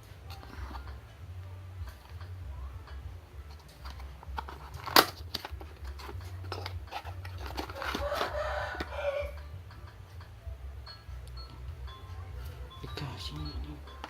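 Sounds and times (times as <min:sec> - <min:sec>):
packaging clicks: 0:03.6 - 0:09.2.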